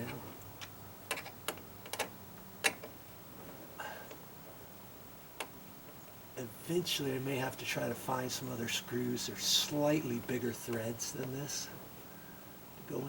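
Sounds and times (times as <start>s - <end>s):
light clicks and taps: 10.2s - 11.4s.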